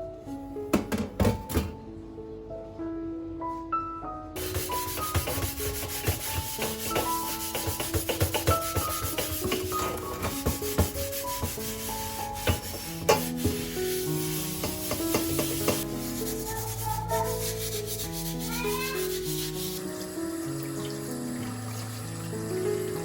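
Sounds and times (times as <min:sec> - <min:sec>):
scrubbing on a surface: 0:04.4 - 0:20.2
music of slow held notes: 0:08.6 - 0:23.0.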